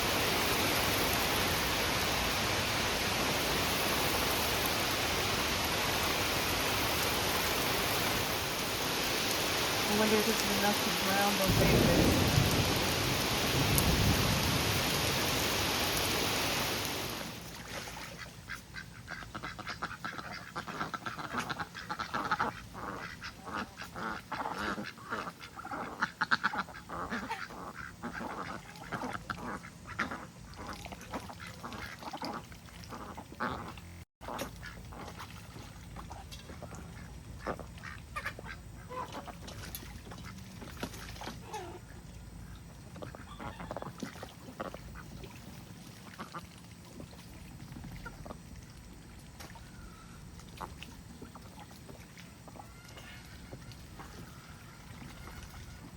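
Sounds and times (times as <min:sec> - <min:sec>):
heavy rain hissing: 0:00.0 - 0:17.4
ducks quacking: 0:18.0 - 0:40.6, 0:41.2 - 0:45.2.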